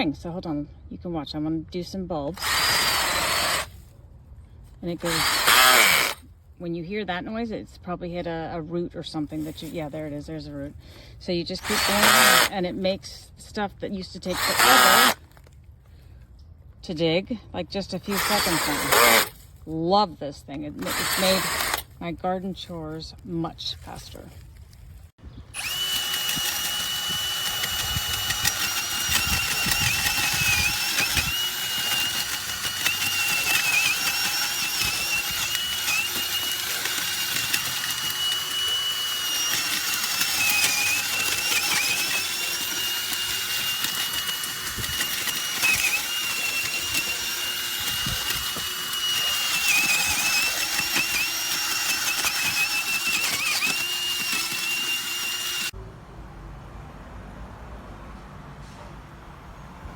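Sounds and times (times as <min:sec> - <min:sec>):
power drill auger boring into soil: 0:02.4 - 0:03.9, 0:04.8 - 0:06.3, 0:09.3 - 0:13.0, 0:14.0 - 0:15.5, 0:17.8 - 0:19.6, 0:20.8 - 0:22.7, 0:25.5 - 0:55.8.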